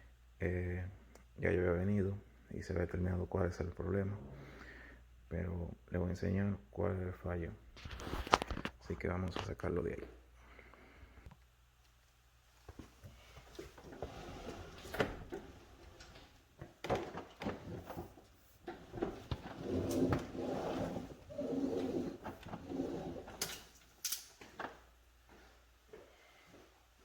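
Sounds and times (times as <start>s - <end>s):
cabinet scraping across floor: 13.6s - 16.3s, 16.9s - 23.5s.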